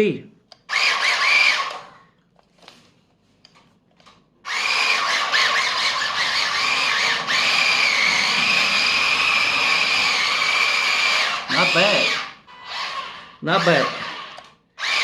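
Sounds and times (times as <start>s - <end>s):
rc car electric motor whining: 0.7s - 2.0s, 4.5s - 15.0s.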